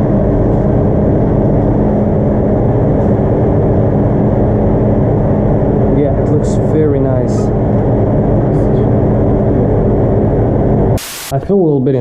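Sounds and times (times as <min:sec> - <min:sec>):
ventilation machine drone: 0:00.0 - 0:12.0.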